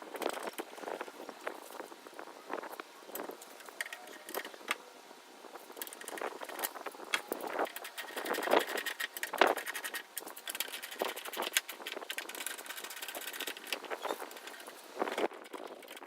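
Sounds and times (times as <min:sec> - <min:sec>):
rustling: 0:00.0 - 0:04.9, 0:05.5 - 0:16.0
tools and parts handled: 0:03.1 - 0:04.8, 0:05.6 - 0:16.0.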